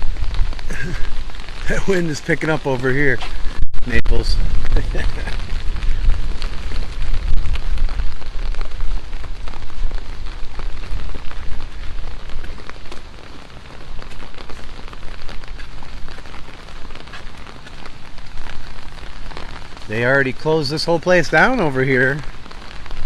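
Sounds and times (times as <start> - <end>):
strong wind buffeting microphone: 0.0 - 20.0
driving rain: 0.0 - 23.0.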